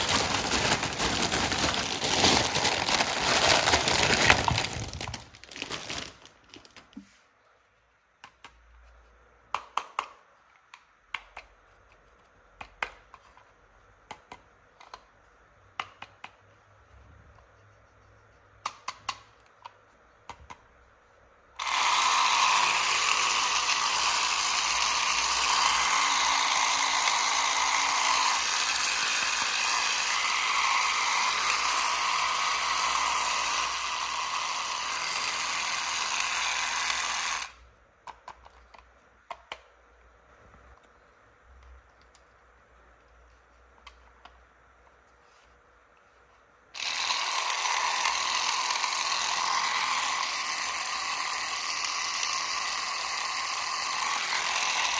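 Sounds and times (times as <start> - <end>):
toy motor running: 0.0 - 6.2, 21.6 - 37.6, 46.8 - 54.9.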